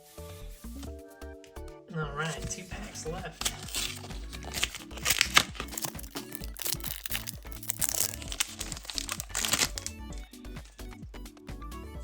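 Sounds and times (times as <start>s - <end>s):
background music: 0.0s - 12.0s
foil wrapper crinkling: 3.4s - 10.2s.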